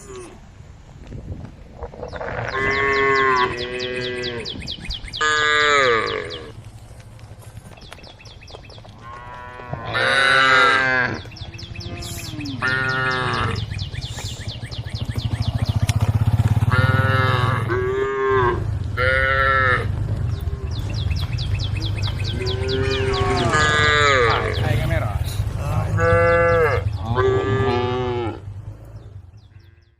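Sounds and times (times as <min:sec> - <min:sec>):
cattle mooing: 0:02.1 - 0:04.6, 0:05.2 - 0:06.6, 0:09.0 - 0:13.7, 0:16.7 - 0:20.9, 0:21.9 - 0:29.9.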